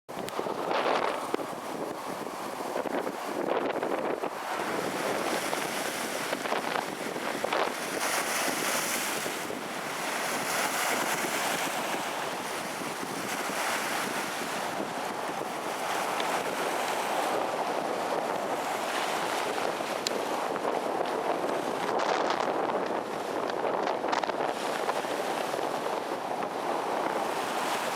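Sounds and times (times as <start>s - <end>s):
storm wind blowing on microphone: 0.1s - 27.9s
surf breaking on shore: 0.1s - 27.9s.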